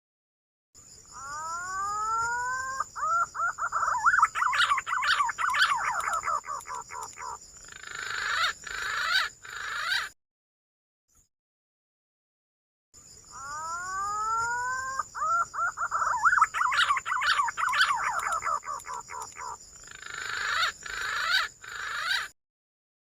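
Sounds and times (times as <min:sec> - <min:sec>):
pigeon calling: 0:02.8 - 0:10.1, 0:15.0 - 0:22.3.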